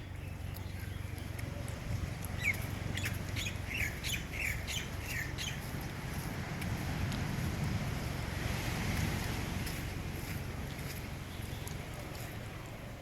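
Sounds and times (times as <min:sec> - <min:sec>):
bird chirping: 0:02.4 - 0:05.7.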